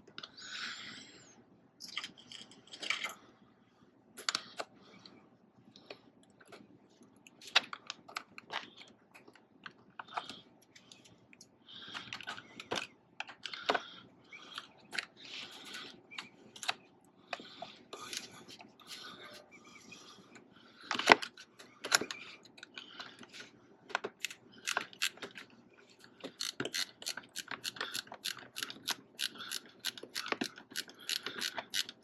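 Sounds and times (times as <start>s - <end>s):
tools and parts clicking: 26.3s - 32.0s.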